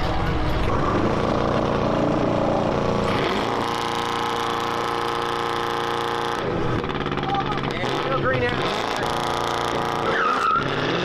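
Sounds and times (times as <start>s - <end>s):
car engine revving hard: 0.0s - 11.0s
car skidding: 6.5s - 11.0s.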